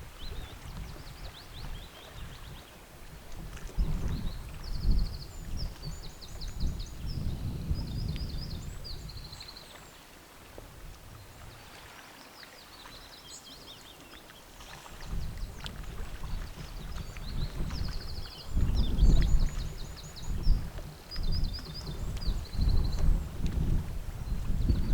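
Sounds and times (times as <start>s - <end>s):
wind buffeting microphone: 0.0s - 9.5s, 14.9s - 24.9s.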